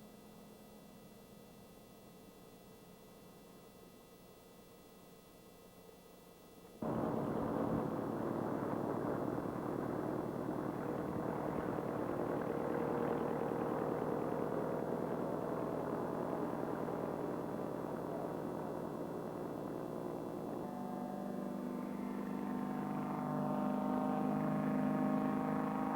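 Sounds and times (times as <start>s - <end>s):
faint hum: 0.0s - 25.9s
aircraft piston engine running: 6.8s - 25.9s.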